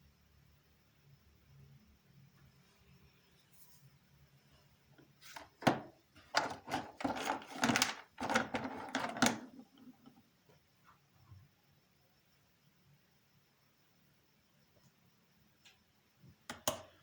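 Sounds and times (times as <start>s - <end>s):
objects knocking and clattering: 5.4s - 10.2s.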